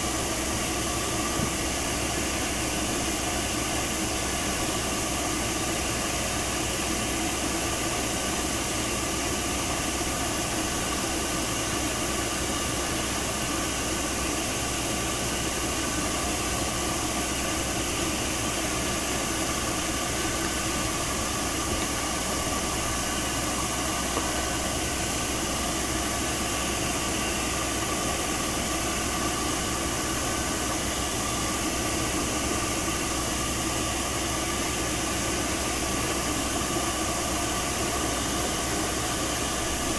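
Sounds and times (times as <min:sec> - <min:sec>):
hair dryer blowing: 0:10.1 - 0:39.9.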